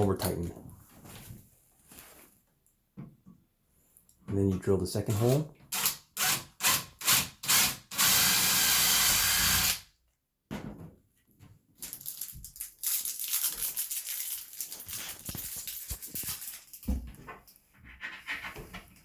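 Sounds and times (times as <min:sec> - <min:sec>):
soft irregular noise: 0:00.0 - 0:02.9
drill boring through door: 0:05.2 - 0:09.8.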